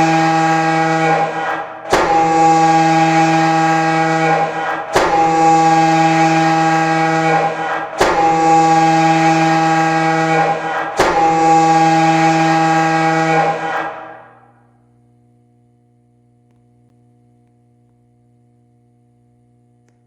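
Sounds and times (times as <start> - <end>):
siren horn-like blasts: 0.0 - 14.6.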